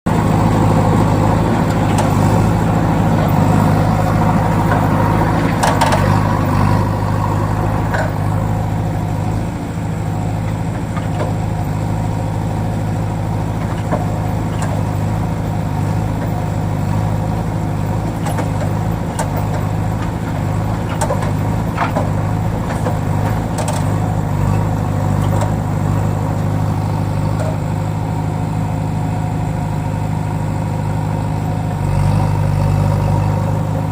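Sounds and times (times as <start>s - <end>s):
excavator engine humming: 0.1s - 33.9s
scattered clicks and knocks: 4.6s - 6.3s, 13.6s - 15.0s, 18.0s - 24.0s.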